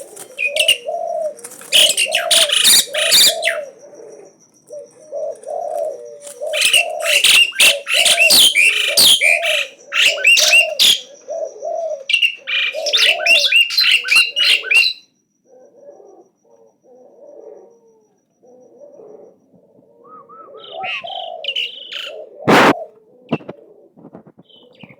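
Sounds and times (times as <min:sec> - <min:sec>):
low cooing notes: 0:00.0 - 0:09.9, 0:15.5 - 0:24.9
starling singing: 0:00.0 - 0:15.1, 0:20.0 - 0:23.5.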